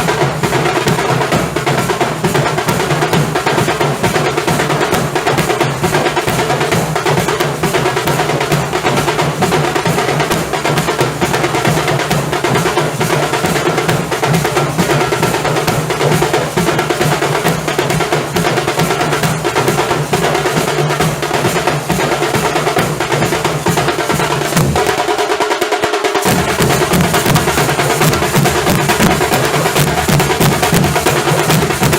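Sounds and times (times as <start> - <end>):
dhol drums beating: 0.0 - 31.9
tasha drums beating: 0.0 - 31.9.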